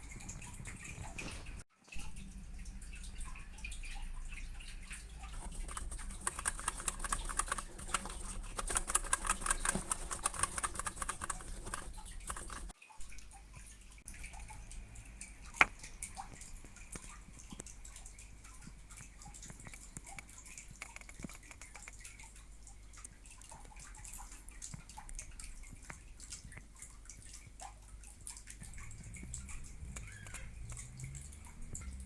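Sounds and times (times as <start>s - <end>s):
mechanical keyboard key clicks: 5.7s - 12.6s.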